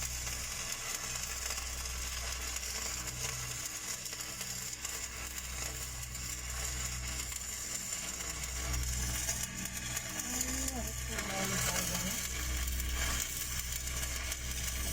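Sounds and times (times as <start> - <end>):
welding arc crackling sizzle: 0.0 - 14.9
low hum: 6.4 - 14.9.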